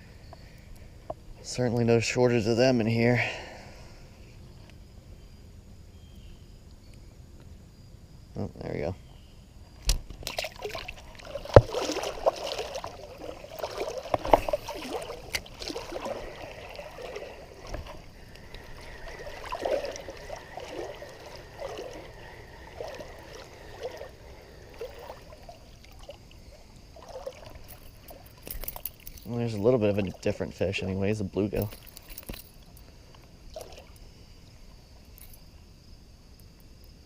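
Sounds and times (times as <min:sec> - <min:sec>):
water splashing and sloshing: 0:09.8 - 0:35.6.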